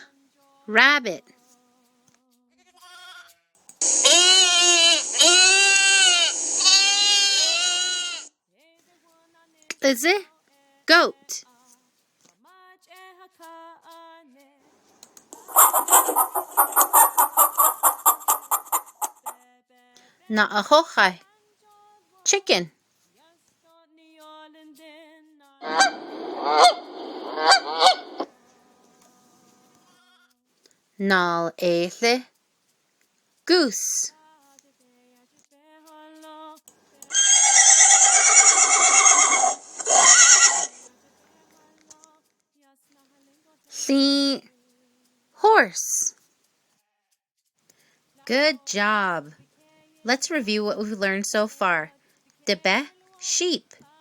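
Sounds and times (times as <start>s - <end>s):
horse whinnying: 3.8s - 8.3s, 15.4s - 19.4s, 25.6s - 28.3s, 37.1s - 40.9s
chicken clucking: 15.4s - 19.4s, 25.6s - 28.8s, 37.0s - 40.9s.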